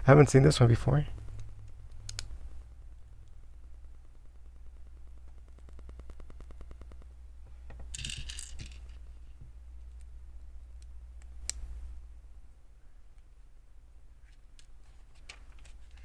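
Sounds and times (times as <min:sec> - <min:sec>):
loose plastic pieces rattling: 0:07.9 - 0:09.0
plastic pieces clicking: 0:07.9 - 0:09.0.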